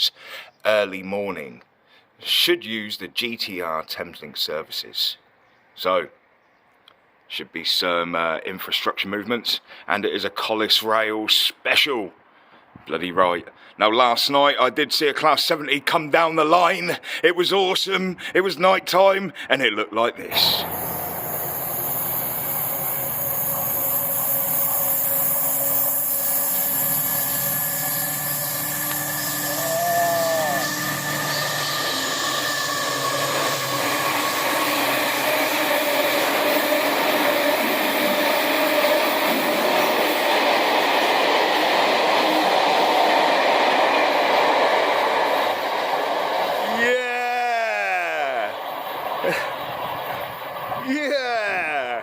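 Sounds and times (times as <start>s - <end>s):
diesel locomotive engine: 20.2s - 52.0s
rail noise: 20.2s - 52.0s.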